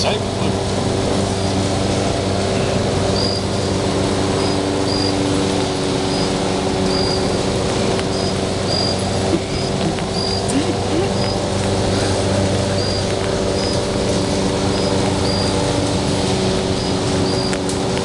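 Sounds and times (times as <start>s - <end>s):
low hum: 0.0s - 18.0s.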